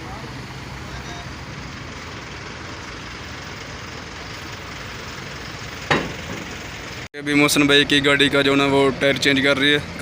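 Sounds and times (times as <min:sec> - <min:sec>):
vehicle engines running: 0:00.0 - 0:10.0
sharp knock: 0:05.9 - 0:06.5.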